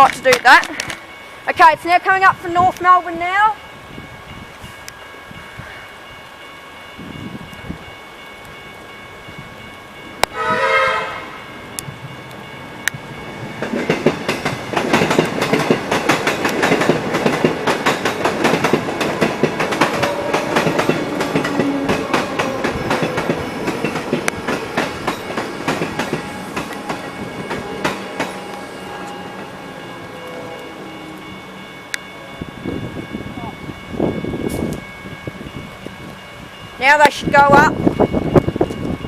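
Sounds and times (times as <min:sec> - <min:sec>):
train wheels clicking over rail joints: 0:11.7 - 0:30.4
level crossing bell ringing: 0:19.3 - 0:38.4.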